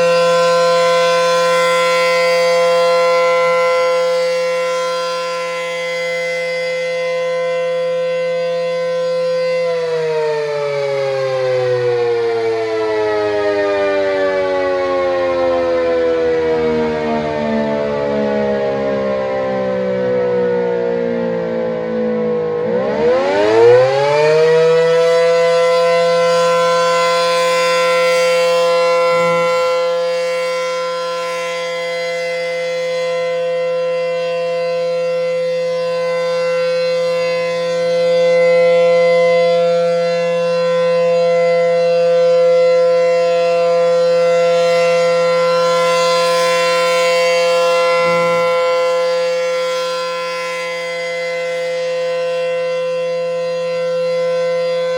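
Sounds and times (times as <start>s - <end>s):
warning siren alert tone: 0.0s - 54.9s.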